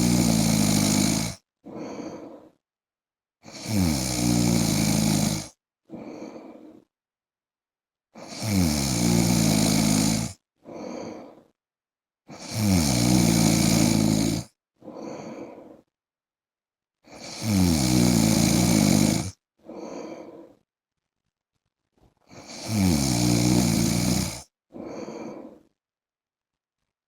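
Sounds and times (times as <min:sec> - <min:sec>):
man snoring: 0:00.0 - 0:02.6, 0:03.4 - 0:06.9, 0:08.2 - 0:11.5, 0:12.3 - 0:15.9, 0:17.1 - 0:20.6, 0:22.3 - 0:25.7
soft breath: 0:01.2 - 0:02.6, 0:05.9 - 0:06.9, 0:10.1 - 0:11.6, 0:14.8 - 0:15.9, 0:19.6 - 0:20.7, 0:24.7 - 0:25.8.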